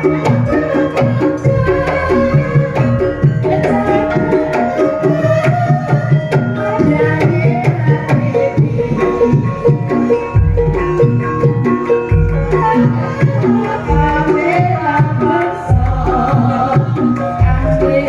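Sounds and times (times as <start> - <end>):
gamelan ensemble playing: 0.0 - 18.0
hand drum strokes: 0.0 - 18.0
metallophone and gong notes: 0.0 - 18.0.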